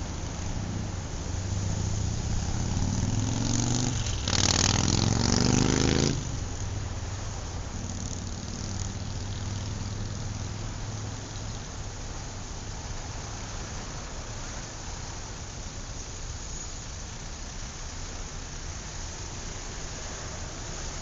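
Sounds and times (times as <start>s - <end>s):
engine revving: 0.0s - 6.7s, 7.7s - 11.5s.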